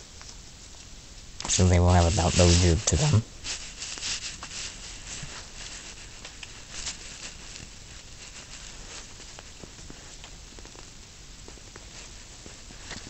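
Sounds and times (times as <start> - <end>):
steady hiss: 0.0 - 13.0
faint light clicks and rustles: 3.5 - 13.0.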